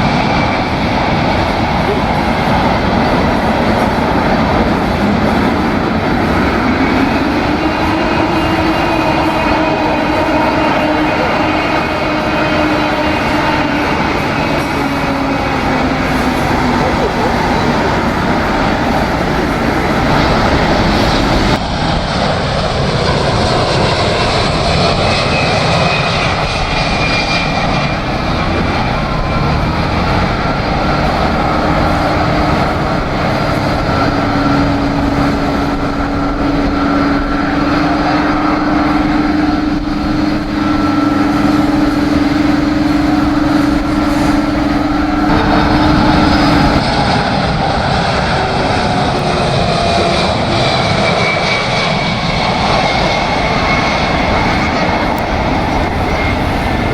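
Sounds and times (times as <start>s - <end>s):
high engine whine: 0.0s - 56.9s
jet airliner engines roaring: 0.0s - 56.9s.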